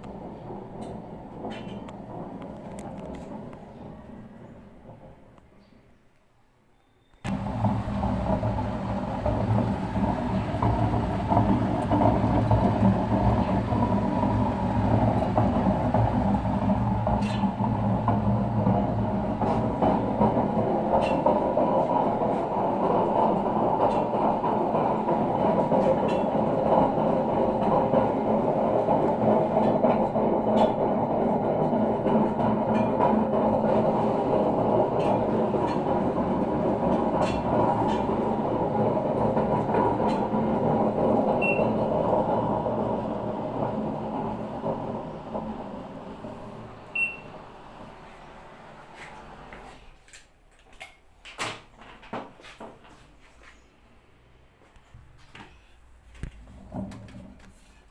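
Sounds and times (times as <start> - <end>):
washing machine drum grinding: 0.0 - 3.5, 7.3 - 48.0.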